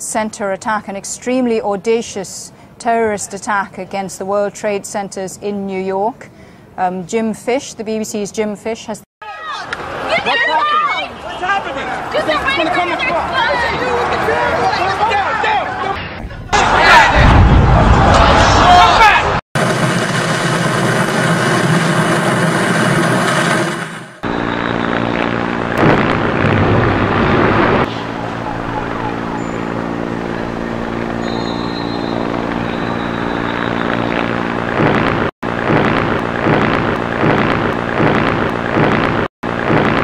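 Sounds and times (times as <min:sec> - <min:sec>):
street noise: 0:00.0 - 0:40.0
steady engine drone: 0:19.6 - 0:40.0.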